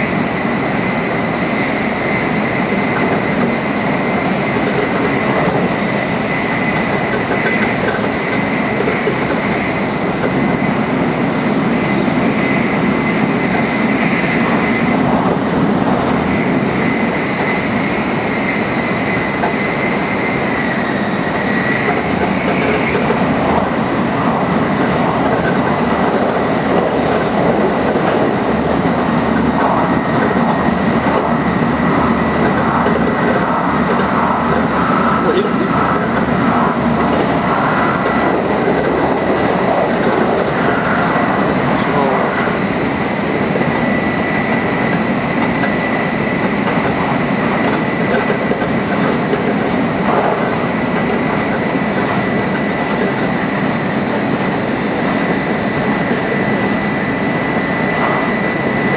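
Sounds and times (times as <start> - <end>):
high-speed train rushing: 0.0 - 58.9
thin high whine: 9.4 - 24.2, 43.8 - 58.9.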